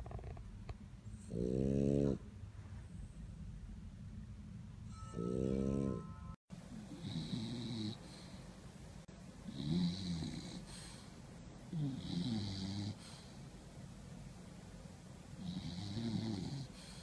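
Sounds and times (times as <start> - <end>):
dog snoring: 0.0 - 0.4, 1.2 - 2.2, 5.1 - 6.0, 6.8 - 8.4, 9.5 - 11.1, 11.7 - 13.3, 15.4 - 17.0.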